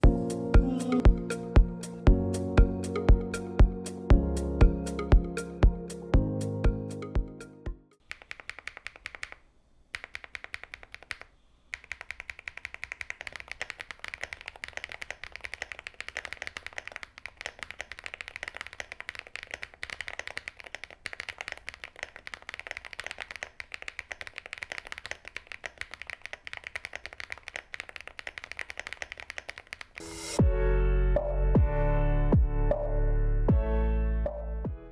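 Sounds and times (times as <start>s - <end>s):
mechanical keyboard typing: 8.0s - 30.1s.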